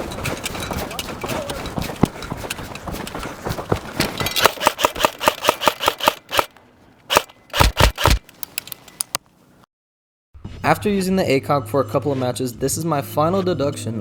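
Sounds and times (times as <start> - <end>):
airsoft guns firing: 4.2 - 6.5, 7.1 - 8.6.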